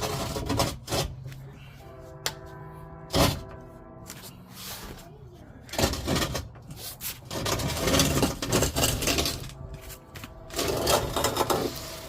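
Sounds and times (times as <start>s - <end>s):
fuel tank scraping underbody: 5.8s - 12.0s.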